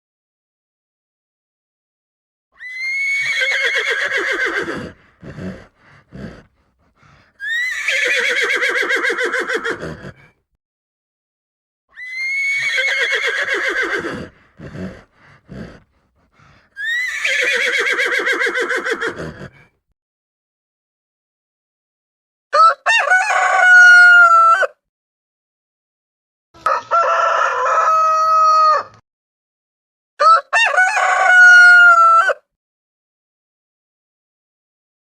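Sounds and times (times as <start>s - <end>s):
horse whinnying: 2.6s - 6.5s, 7.4s - 10.3s, 12.0s - 15.9s, 16.8s - 19.7s.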